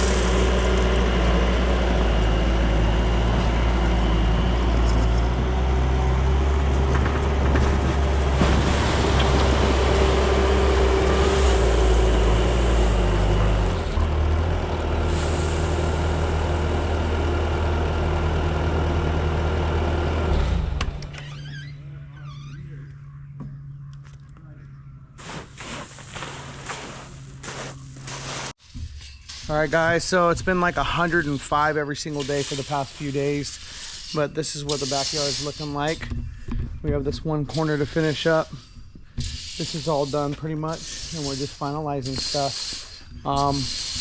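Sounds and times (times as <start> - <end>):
diesel engine running: 0.0 - 22.2.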